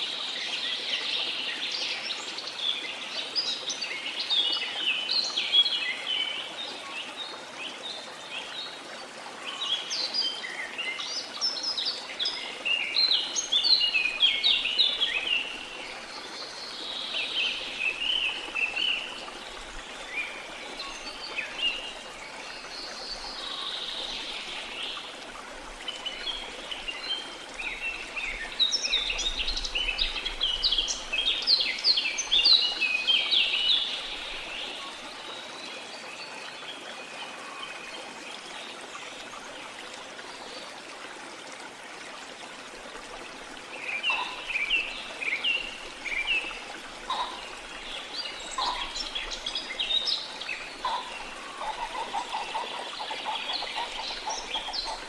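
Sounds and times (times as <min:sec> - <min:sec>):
small birds chirping: 0:43.8 - 0:55.0.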